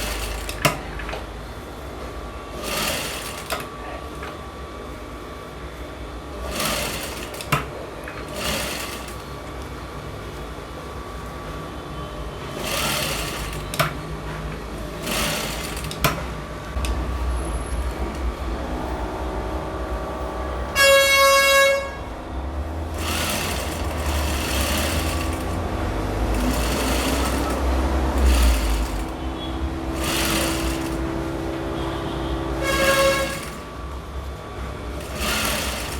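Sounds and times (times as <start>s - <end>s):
sewing machine stitching: 0.0s - 0.9s, 2.6s - 3.7s, 6.4s - 9.4s, 12.5s - 14.0s, 14.8s - 16.2s, 22.8s - 31.6s, 32.6s - 33.8s, 34.9s - 35.9s
vehicle horn honking: 19.4s - 22.8s, 29.0s - 33.7s.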